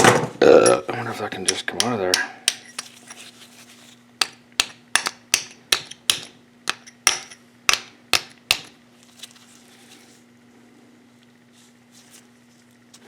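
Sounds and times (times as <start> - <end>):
hammer tapping on metal: 0.6 - 2.8.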